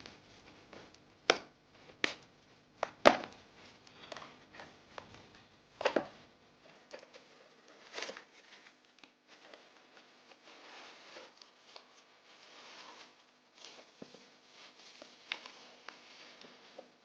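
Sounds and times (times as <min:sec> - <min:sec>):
plastic and cardboard crackling: 0:00.0 - 0:17.0
packaging rustling: 0:03.9 - 0:17.0.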